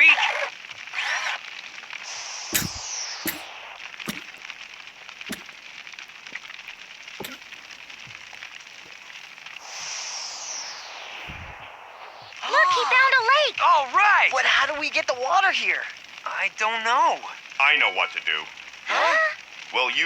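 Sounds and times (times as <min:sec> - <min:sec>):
sharp cracks: 0:00.0 - 0:15.1
fire crackling hiss: 0:00.0 - 0:20.0
falling whoosh: 0:09.6 - 0:13.1.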